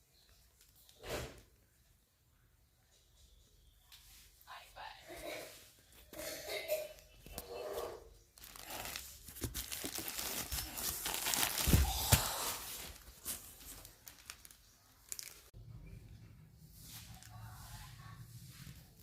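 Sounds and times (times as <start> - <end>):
plastic wrapping crinkling: 8.3 - 15.6.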